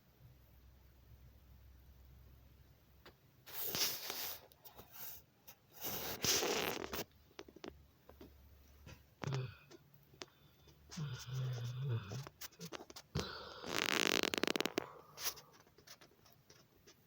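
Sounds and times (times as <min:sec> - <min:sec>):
dog snoring: 0:10.9 - 0:15.5.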